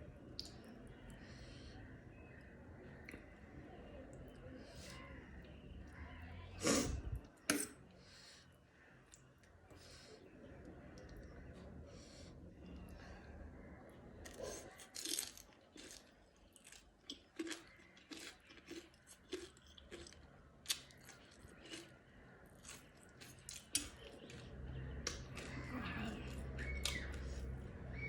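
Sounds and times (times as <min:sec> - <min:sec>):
person chewing crunchy food: 0:14.3 - 0:27.6.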